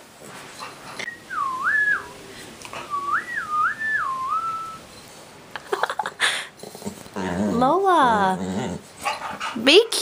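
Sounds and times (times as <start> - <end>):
person whistling: 1.1 - 2.2, 2.9 - 4.8.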